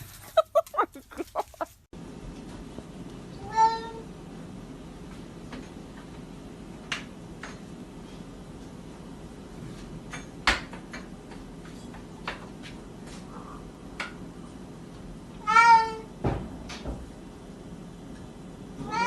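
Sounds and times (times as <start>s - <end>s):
cat meowing: 3.4s - 4.0s, 15.4s - 16.1s.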